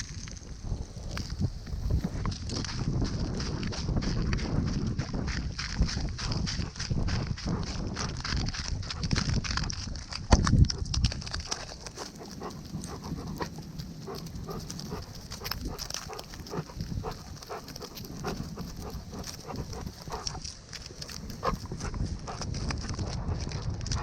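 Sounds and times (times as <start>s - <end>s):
low rumble against microphone: 0.0s - 24.0s
dog footfalls clicking and tapping: 1.1s - 24.0s
harness rustling: 5.1s - 24.0s.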